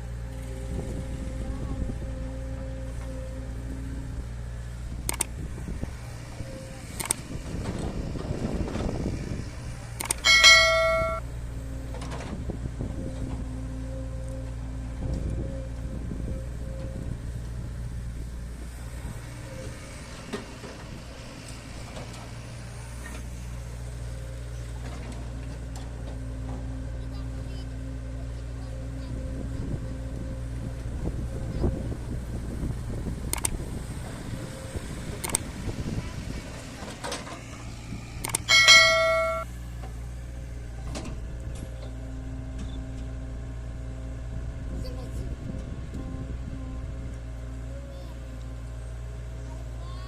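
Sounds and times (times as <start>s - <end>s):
diesel machinery humming: 0.0s - 50.0s
loud metallic ring: 10.2s - 11.3s, 38.5s - 39.5s
steady high tone: 10.2s - 11.3s, 38.4s - 39.5s.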